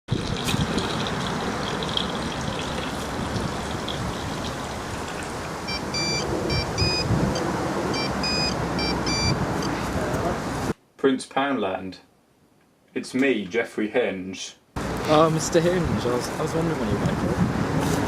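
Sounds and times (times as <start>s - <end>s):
phone keypad beeps: 5.7s - 7.0s, 7.9s - 9.4s.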